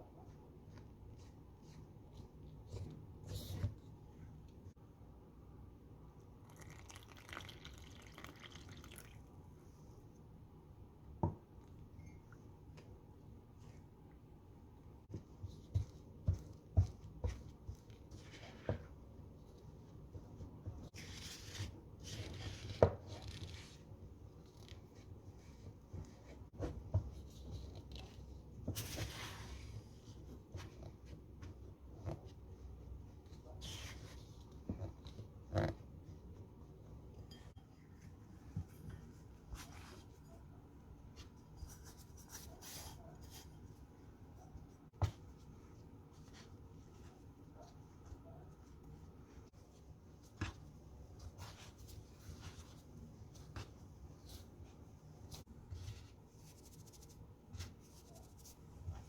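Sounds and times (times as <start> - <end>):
soft scraping strokes at a counter: 24.9 - 36.2, 37.2 - 59.0.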